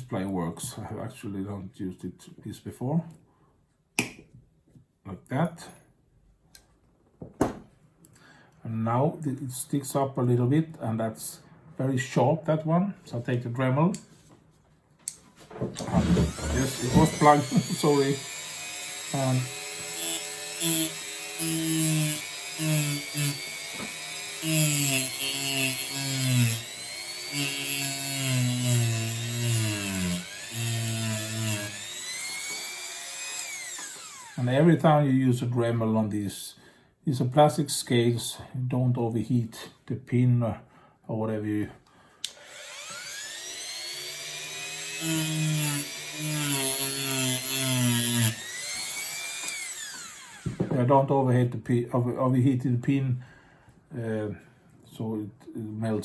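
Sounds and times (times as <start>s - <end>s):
rotary tool grinding metal: 15.8s - 34.4s, 42.4s - 50.5s.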